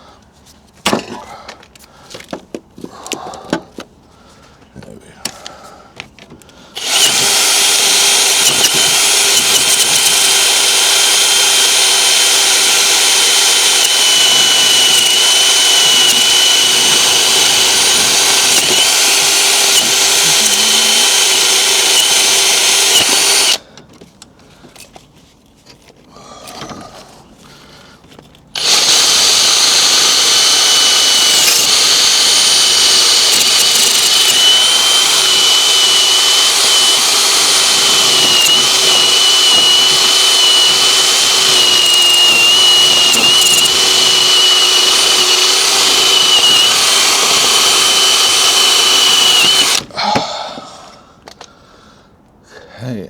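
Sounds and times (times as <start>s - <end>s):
power tool whining: 6.7s - 23.6s, 28.5s - 50.7s.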